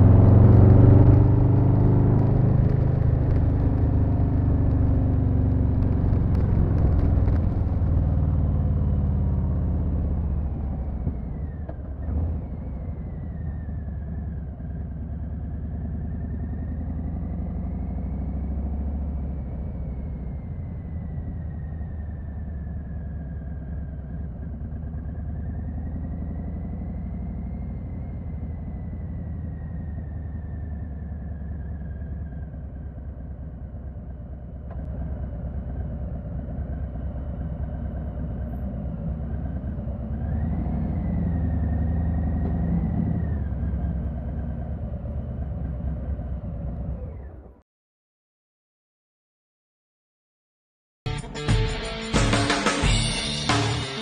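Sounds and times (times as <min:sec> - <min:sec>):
motorcycle engine running: 0:00.0 - 0:27.2, 0:51.1 - 0:54.0.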